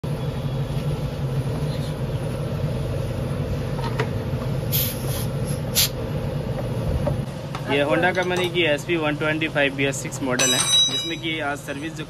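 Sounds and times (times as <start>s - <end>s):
short hiss: 4.7s - 6.0s.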